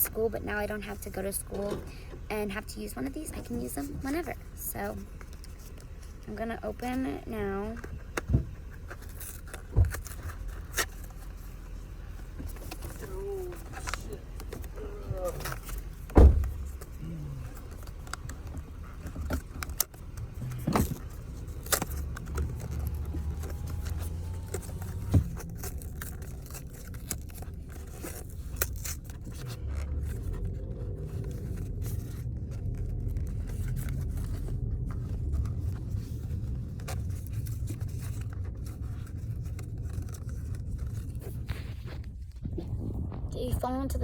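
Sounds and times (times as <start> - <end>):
steady low rumble: 0.1 - 44.0
packaging rustling and scraping: 2.8 - 43.0
packaging clicks and snaps: 12.5 - 41.2.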